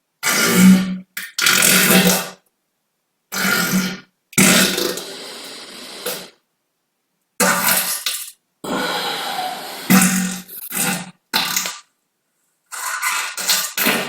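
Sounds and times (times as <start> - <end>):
person farting: 0.2 - 2.4, 3.3 - 6.4, 9.8 - 11.9.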